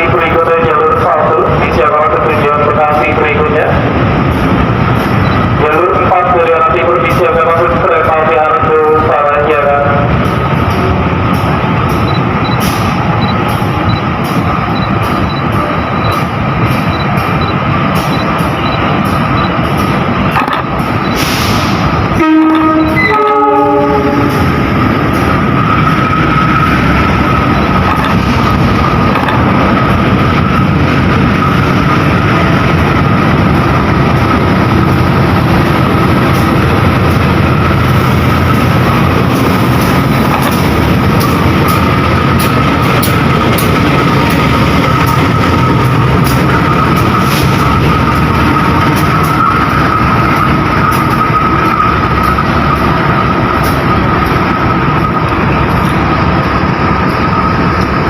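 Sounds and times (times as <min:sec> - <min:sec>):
train wheels rumbling on rail: 0:00.0 - 0:58.0
locomotive horn chord: 0:22.2 - 0:24.5.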